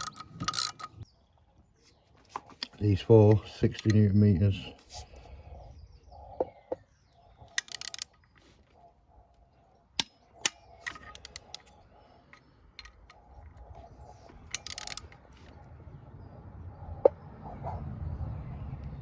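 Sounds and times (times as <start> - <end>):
ratchet clicking: 0.0 - 1.0, 7.5 - 8.1, 14.5 - 15.2
sharp metallic clicks: 0.0 - 1.0, 2.6 - 4.2, 7.4 - 8.4, 10.0 - 15.4
light ticks of tools: 3.5 - 4.2, 10.0 - 13.7.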